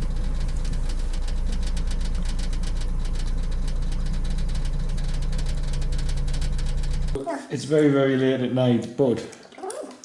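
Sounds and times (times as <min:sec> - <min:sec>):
car engine and road noise: 0:00.0 - 0:07.2.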